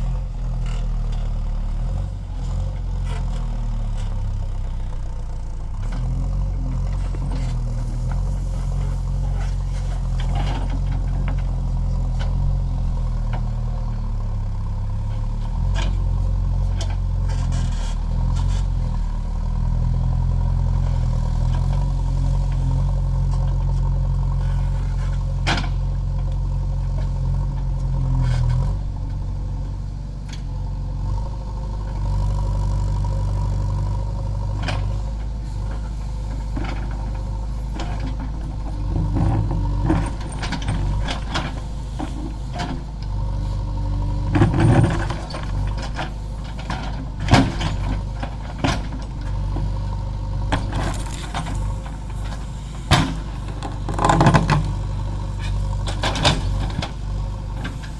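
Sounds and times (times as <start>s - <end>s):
diesel engine running: 0.0s - 57.9s
metallic clanks of digger bucket: 44.3s - 49.2s, 50.5s - 54.8s.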